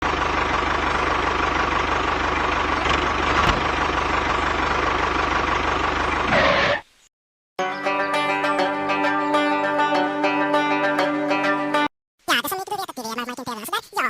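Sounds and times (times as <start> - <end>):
small engine running: 0.0 - 6.8.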